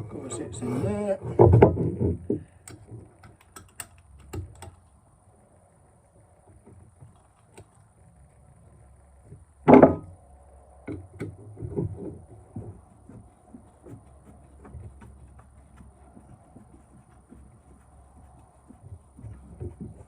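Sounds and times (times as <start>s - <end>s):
small clicks and knocks: 1.3s - 5.0s, 6.4s - 8.0s, 10.8s - 20.0s.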